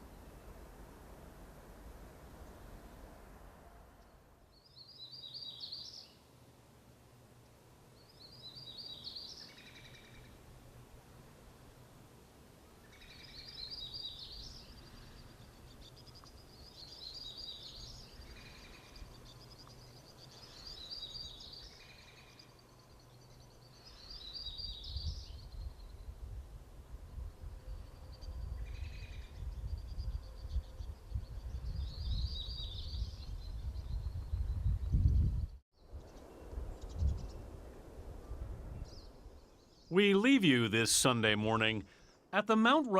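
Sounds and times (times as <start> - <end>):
songbird chirping phrase: 4.0 - 6.3, 8.0 - 10.4, 12.8 - 26.1, 39.0 - 42.9.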